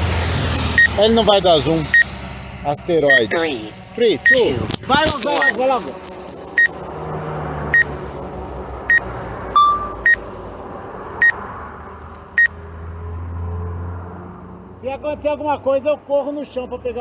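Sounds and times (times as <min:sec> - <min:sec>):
lower beep: 0:03.1 - 0:04.6, 0:08.9 - 0:10.2
remote control beeping: 0:03.1 - 0:05.9, 0:09.6 - 0:10.2.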